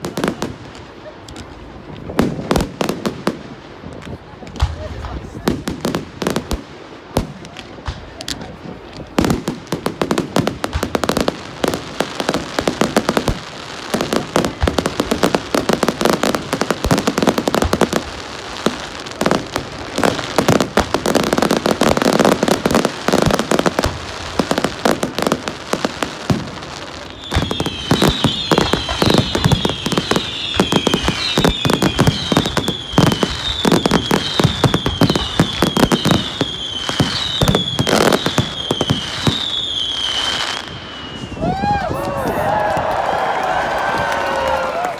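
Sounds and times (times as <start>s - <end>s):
fireworks bangs and crackles: 0.0s - 44.9s
falling firework whistles: 27.0s - 44.9s.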